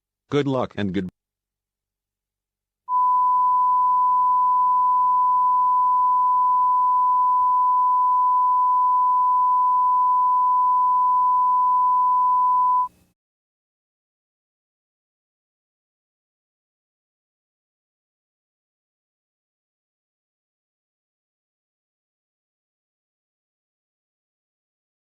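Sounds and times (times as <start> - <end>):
steady pure tone: 2.9 - 12.9
faint hum: 2.9 - 13.0.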